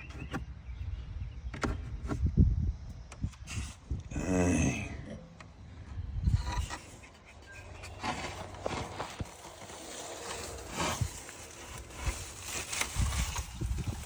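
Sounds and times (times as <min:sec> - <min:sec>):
dry leaves rustling and crackling: 0:07.8 - 0:14.0.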